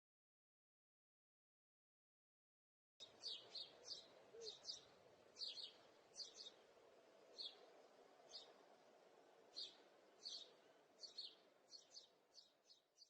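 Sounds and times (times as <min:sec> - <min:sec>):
small bird chirping: 0:03.0 - 0:06.6, 0:07.3 - 0:08.6, 0:09.5 - 0:13.0
steady low hiss: 0:03.0 - 0:12.6.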